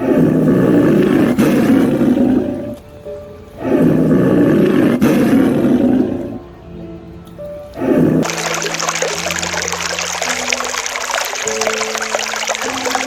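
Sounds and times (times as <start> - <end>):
large animal roaring: 0.0 - 2.8, 3.6 - 6.4, 7.8 - 8.3.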